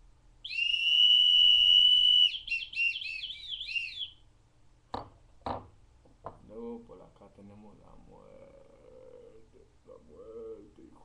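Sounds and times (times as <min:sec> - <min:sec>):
ocarina whistling: 0:00.4 - 0:04.3.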